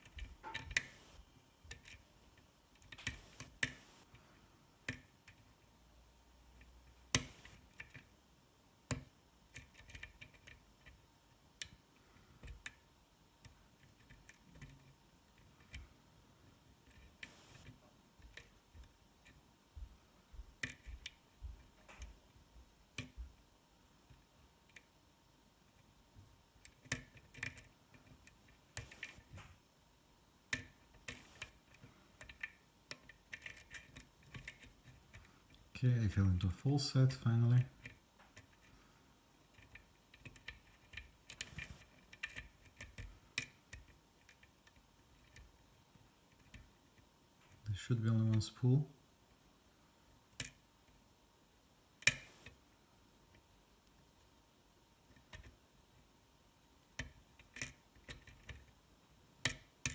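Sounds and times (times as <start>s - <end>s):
lock pick clicking on metal pins: 8.9s - 11.0s, 32.2s - 35.2s, 39.5s - 45.5s.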